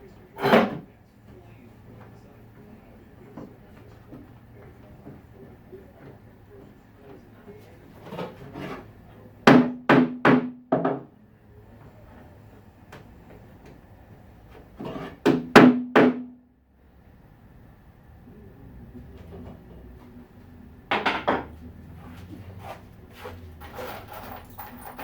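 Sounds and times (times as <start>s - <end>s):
knocking on wooden cabinet: 9.5s - 11.1s, 15.2s - 16.3s, 20.9s - 21.6s.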